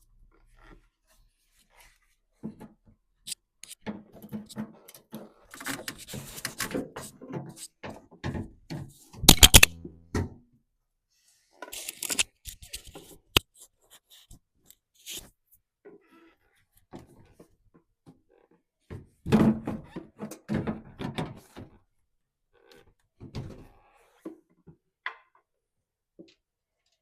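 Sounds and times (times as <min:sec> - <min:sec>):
clicks knocks and rattles of parts: 0:03.6 - 0:10.3.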